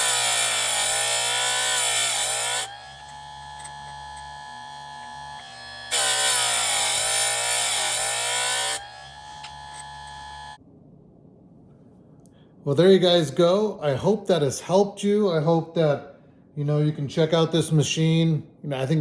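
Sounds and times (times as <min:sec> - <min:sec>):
motor humming: 0:00.0 - 0:10.6.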